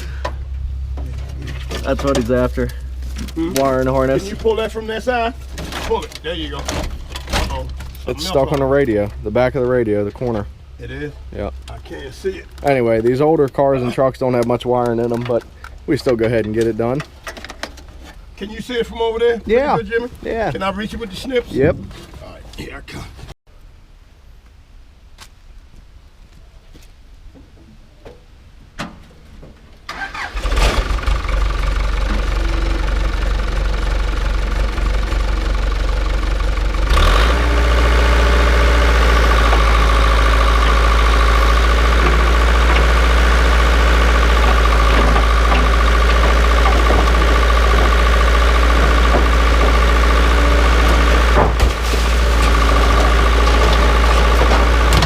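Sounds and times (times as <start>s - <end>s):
backhoe diesel engine running: 0.0s - 10.5s, 29.9s - 55.0s.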